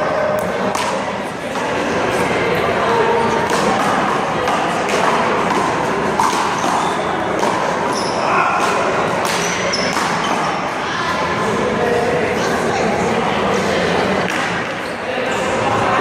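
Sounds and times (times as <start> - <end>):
voices talking: 0.0 - 16.0
handball hitting wall and ground: 3.4 - 10.6.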